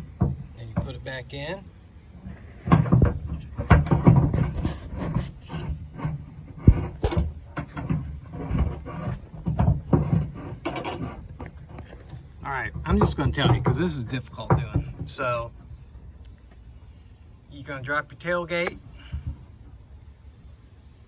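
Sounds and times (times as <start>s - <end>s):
metal and plastic parts scraping: 2.2s - 16.6s.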